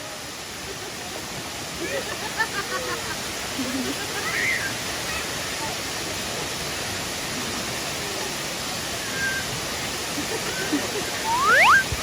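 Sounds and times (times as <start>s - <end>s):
waterfall rushing: 0.0s - 12.0s
sharp rising squeal: 11.3s - 11.9s.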